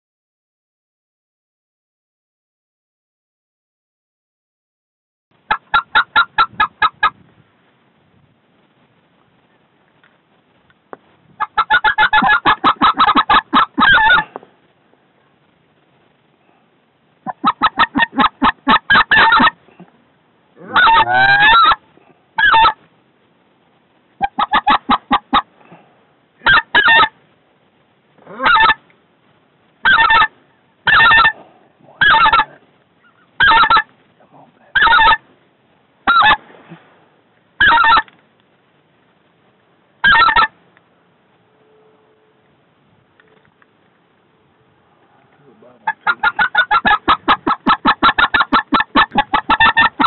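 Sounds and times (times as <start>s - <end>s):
goose calls: 11.4s - 14.4s, 17.2s - 19.8s, 20.6s - 21.8s, 22.4s - 22.8s, 24.2s - 25.5s, 26.4s - 27.2s, 28.3s - 28.8s, 29.8s - 31.4s, 32.0s - 33.9s, 34.7s - 35.2s, 36.0s - 36.4s, 37.6s - 38.1s, 40.0s - 40.5s, 45.2s - 50.0s.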